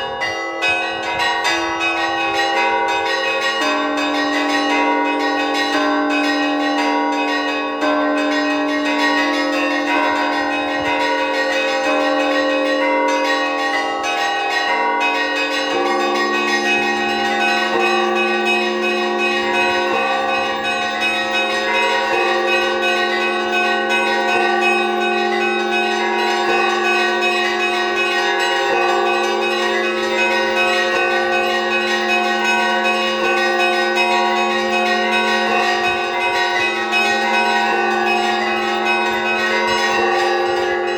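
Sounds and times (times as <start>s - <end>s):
church bells pealing: 0.0s - 40.9s.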